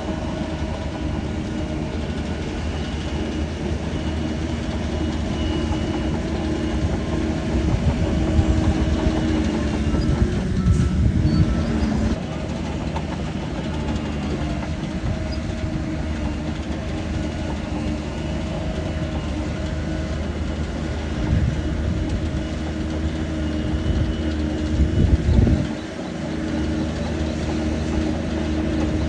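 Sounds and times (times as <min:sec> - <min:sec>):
bulldozer diesel engine running: 0:00.0 - 0:29.0
clanking rattle of tracks: 0:00.0 - 0:29.0.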